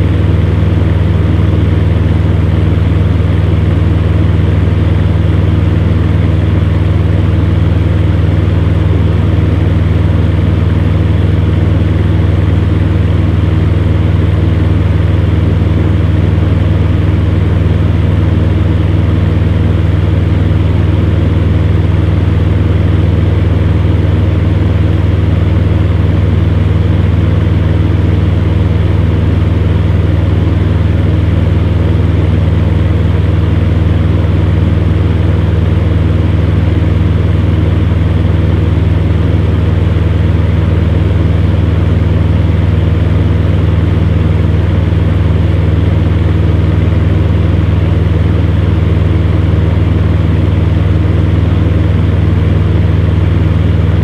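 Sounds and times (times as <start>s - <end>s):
fan heater motor hum: 0.0s - 54.0s.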